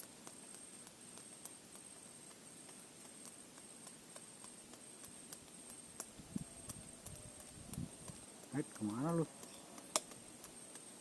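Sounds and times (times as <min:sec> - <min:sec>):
sharp clicks: 0:00.0 - 0:10.9
thin high steady tone: 0:00.0 - 0:11.0.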